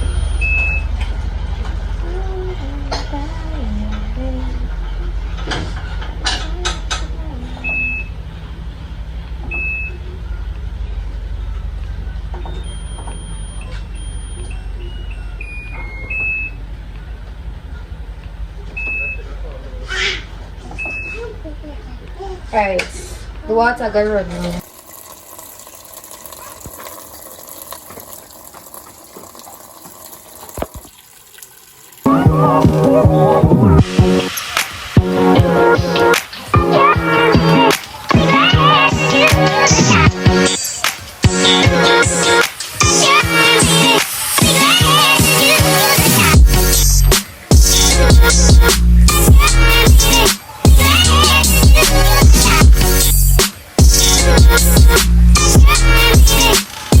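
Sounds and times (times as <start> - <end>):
water filling washing machine: 24.4 - 48.6
loud music: 32.1 - 57.0.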